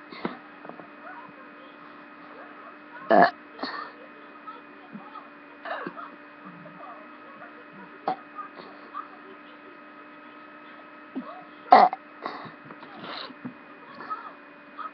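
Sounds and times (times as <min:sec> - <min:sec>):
electrical hum: 0:00.0 - 0:14.9
loud burp: 0:03.1 - 0:03.4, 0:11.7 - 0:12.0.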